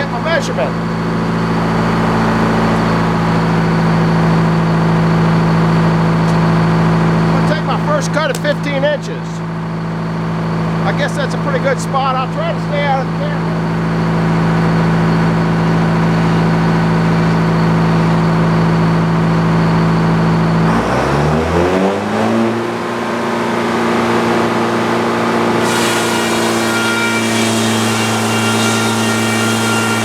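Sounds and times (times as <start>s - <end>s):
sawmill engine running: 0.0s - 30.0s
circular saw blade cutting log: 24.0s - 30.0s.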